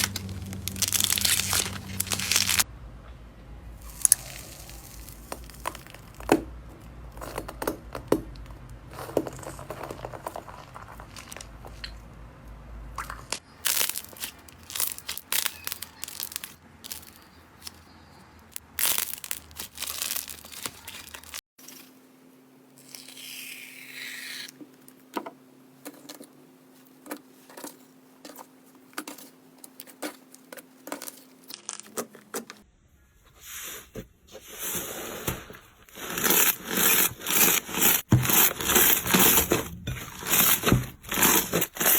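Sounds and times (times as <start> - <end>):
slime crackling and popping: 0.0 - 2.7, 3.8 - 6.4, 13.6 - 17.2, 18.6 - 21.4.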